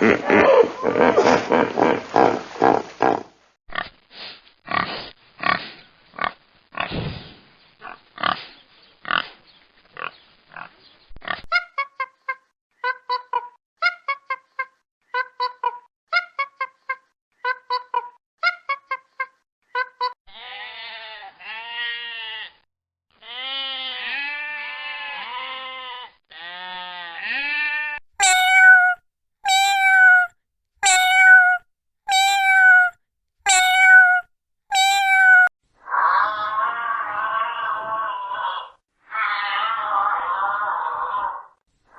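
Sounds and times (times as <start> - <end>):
goat bleats: 23.2 - 32.9.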